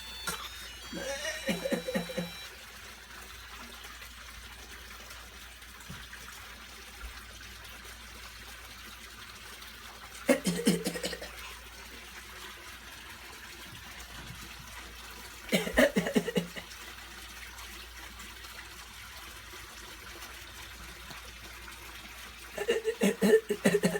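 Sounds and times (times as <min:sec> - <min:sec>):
person fake coughing: 0:00.3 - 0:02.4, 0:10.3 - 0:11.4, 0:15.5 - 0:16.6, 0:22.6 - 0:23.9.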